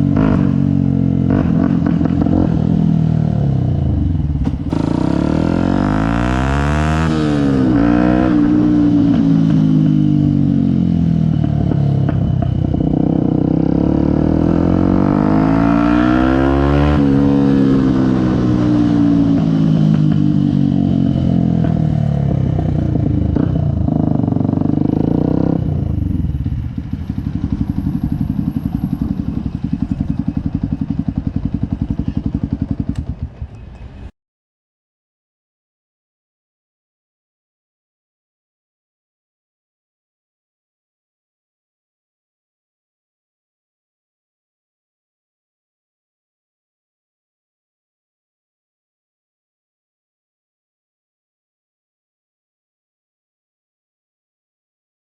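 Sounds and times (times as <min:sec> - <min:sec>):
motorcycle engine revving: 0:00.0 - 0:34.1.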